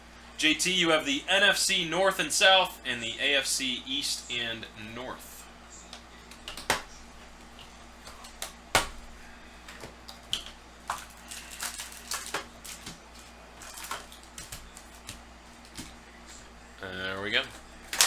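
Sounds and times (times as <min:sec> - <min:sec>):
cardboard and wrapper crinkling: 0:10.9 - 0:15.8.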